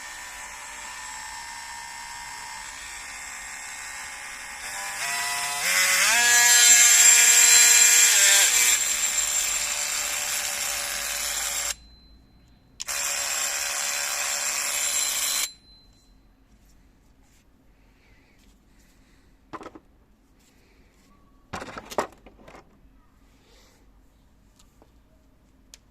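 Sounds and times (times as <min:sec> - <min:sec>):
oscillating multi-tool buzzing: 0:00.0 - 0:12.1, 0:12.8 - 0:15.8.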